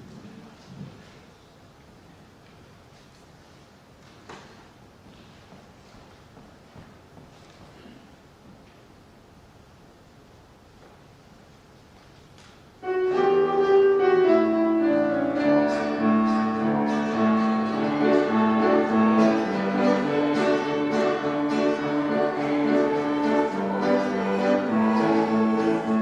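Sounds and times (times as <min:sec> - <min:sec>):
piano with bowed strings: 0:12.8 - 0:26.0.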